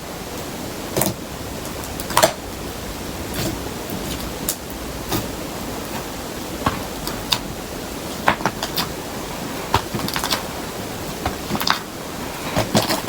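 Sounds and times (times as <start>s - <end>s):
steady hiss: 0.0s - 13.0s.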